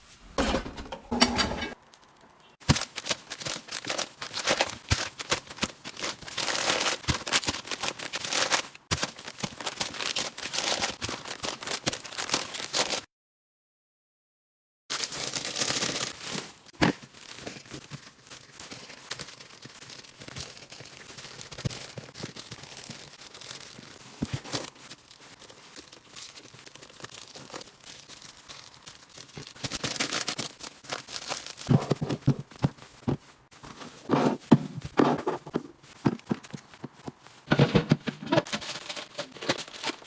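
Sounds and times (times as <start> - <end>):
items set down knocking: 0.1 - 1.8, 37.5 - 38.7
plastic packaging crinkling: 1.6 - 13.0, 14.9 - 33.9, 38.4 - 40.0.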